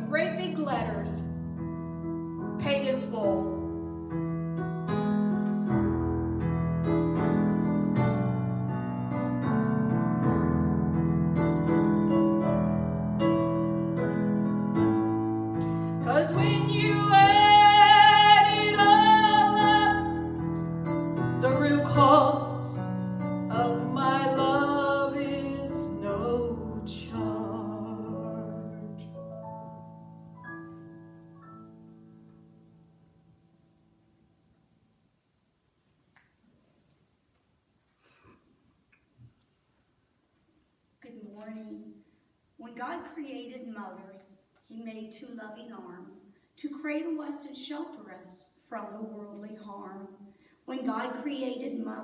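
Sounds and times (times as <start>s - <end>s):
piano music: 0.0s - 34.1s
person singing with vibrato: 15.6s - 20.4s, 21.4s - 22.8s, 23.4s - 29.2s.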